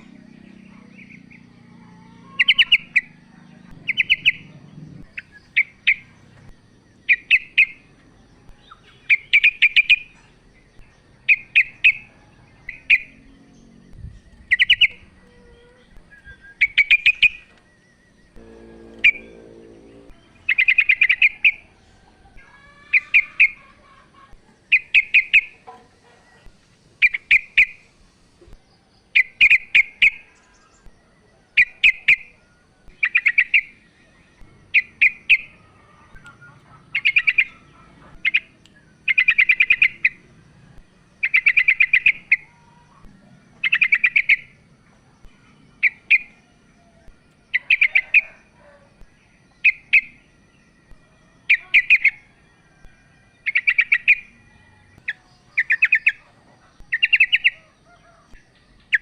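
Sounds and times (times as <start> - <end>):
bird chattering calls: 2.2 - 6.2, 36.2 - 40.2.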